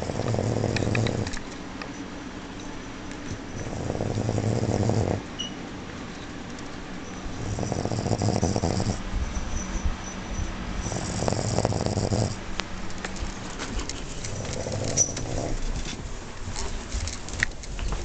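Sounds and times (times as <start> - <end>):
woman snoring: 0.0 - 1.3, 3.7 - 5.2, 7.4 - 9.0, 10.9 - 12.4.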